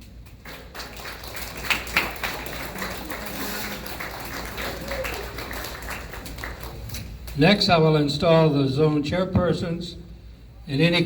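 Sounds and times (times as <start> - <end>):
audience clapping: 0.0 - 7.4.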